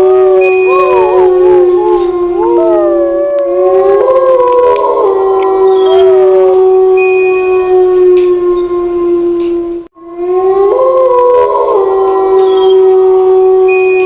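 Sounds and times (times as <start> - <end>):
dogs howling: 0.0 - 7.1, 10.3 - 13.8.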